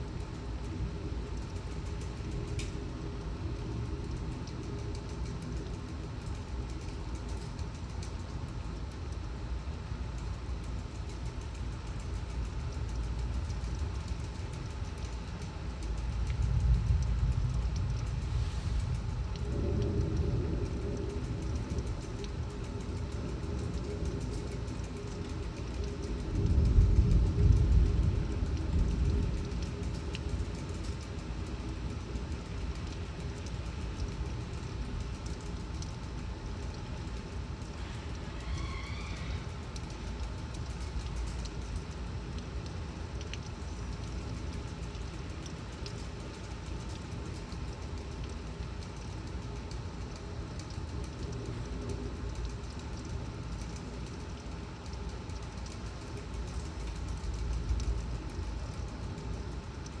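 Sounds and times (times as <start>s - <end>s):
deep continuous rumble: 0.0s - 60.0s
torrential rain: 0.0s - 60.0s
gusting wind: 15.5s - 35.2s.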